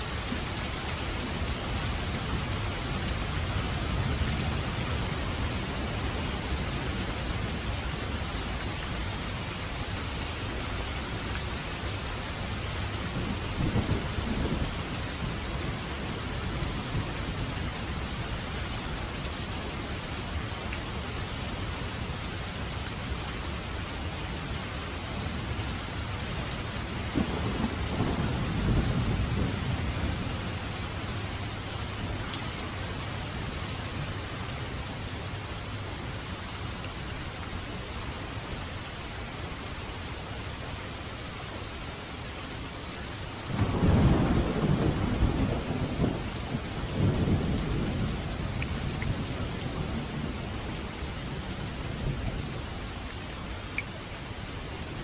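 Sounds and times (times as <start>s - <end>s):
steady rain falling: 0.0s - 55.0s
thunder rumbling: 27.1s - 32.2s, 43.5s - 51.0s.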